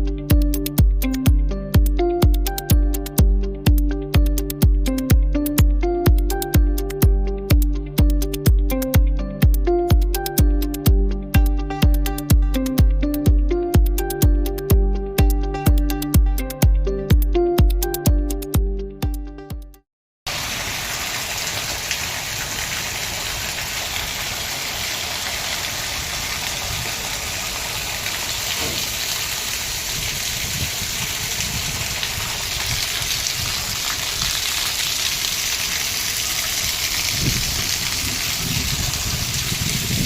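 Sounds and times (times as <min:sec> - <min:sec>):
heavy rain: 0:20.3 - 0:40.0
low rumbles of wind gusts: 0:29.6 - 0:34.3, 0:36.5 - 0:40.0.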